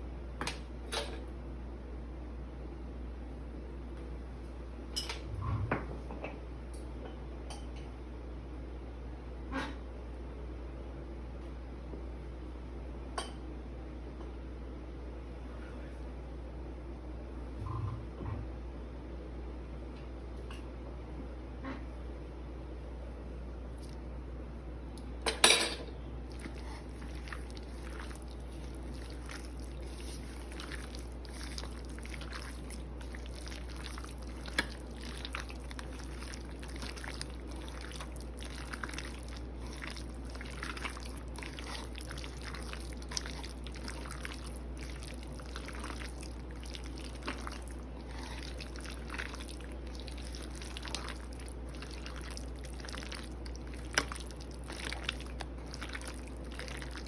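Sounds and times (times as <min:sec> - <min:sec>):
low steady hum: 0:00.0 - 0:57.0
liquid dripping: 0:26.3 - 0:57.0.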